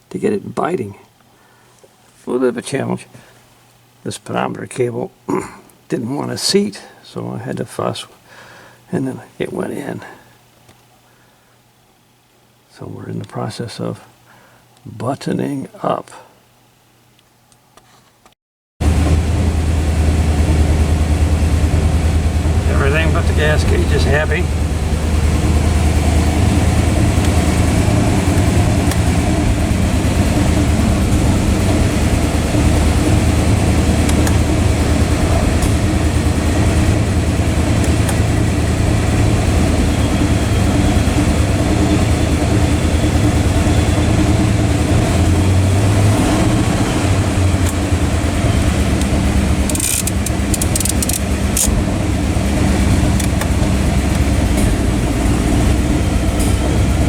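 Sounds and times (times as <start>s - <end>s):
car engine idling: 18.8s - 57.0s.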